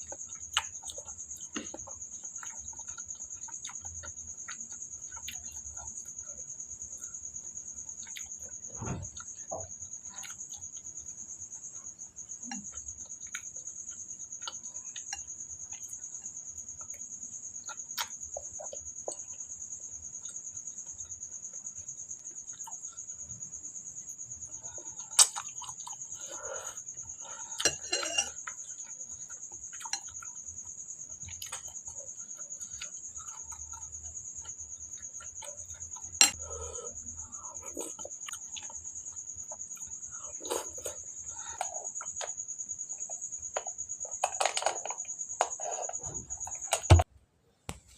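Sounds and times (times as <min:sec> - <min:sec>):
crickets chirring: 0:00.0 - 0:47.9
sharp knocks: 0:46.8 - 0:47.0.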